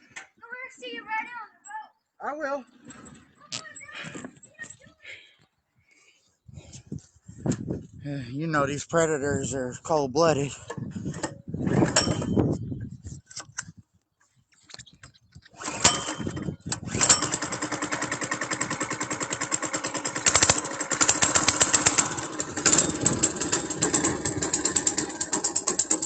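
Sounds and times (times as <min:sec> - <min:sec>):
small engine starting and idling: 0:15.5 - 0:26.0.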